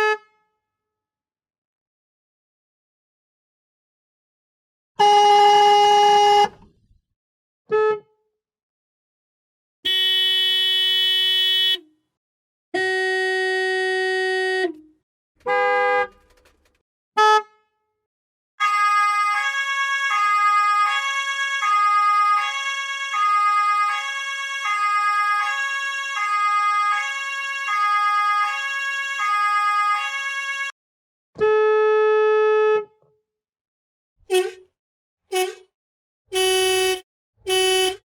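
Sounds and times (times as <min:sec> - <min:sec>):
car horn blasts: 0:05.0 - 0:06.7, 0:07.7 - 0:08.1, 0:09.9 - 0:11.9, 0:12.8 - 0:14.8, 0:15.4 - 0:16.4, 0:17.2 - 0:17.7, 0:31.4 - 0:32.9, 0:34.3 - 0:34.7, 0:35.3 - 0:35.7, 0:36.3 - 0:38.0
two-tone hi-lo siren: 0:18.6 - 0:30.7.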